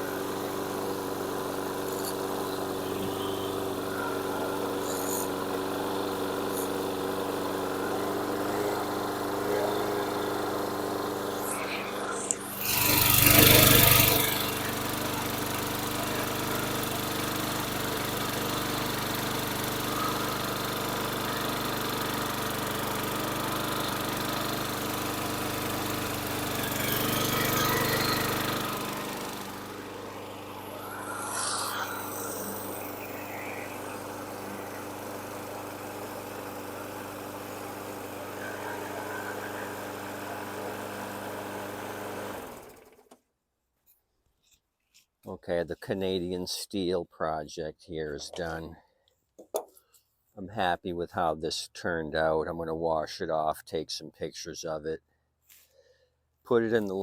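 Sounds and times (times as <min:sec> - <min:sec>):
lawn mower engine running: 0:00.0 - 0:43.1.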